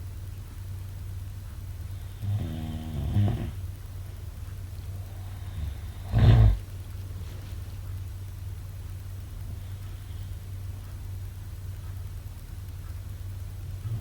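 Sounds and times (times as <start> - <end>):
steady low hum: 0.0 - 14.0
loud snort: 2.2 - 3.6, 5.6 - 6.6
person snoring: 2.2 - 3.6, 5.4 - 6.6.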